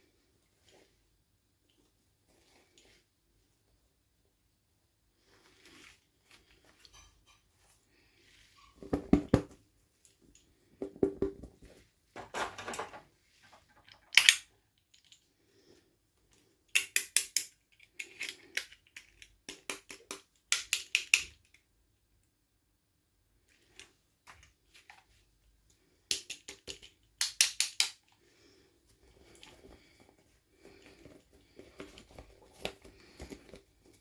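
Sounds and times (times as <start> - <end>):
plastic toy pieces clicking: 13.9 - 15.2, 16.7 - 21.6, 26.1 - 28.1.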